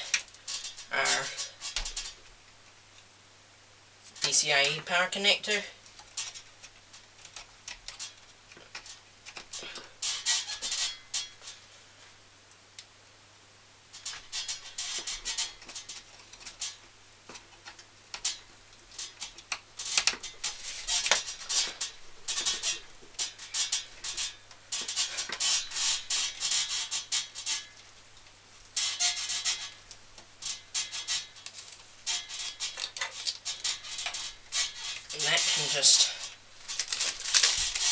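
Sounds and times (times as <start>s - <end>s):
clicking and rattling plastic parts: 5.8s - 11.6s, 14.0s - 37.9s.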